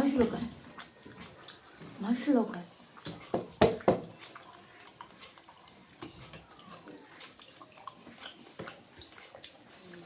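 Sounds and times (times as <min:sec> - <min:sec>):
eating sounds: 0:00.0 - 0:10.0.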